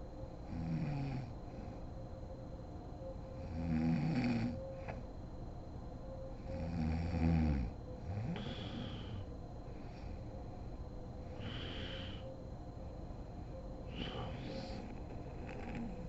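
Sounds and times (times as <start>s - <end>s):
woman snoring: 0.5s - 1.3s, 3.5s - 4.6s, 6.5s - 9.3s, 11.4s - 12.2s, 13.9s - 16.0s
whistling breath: 8.4s - 9.3s, 11.3s - 12.4s, 13.8s - 14.9s.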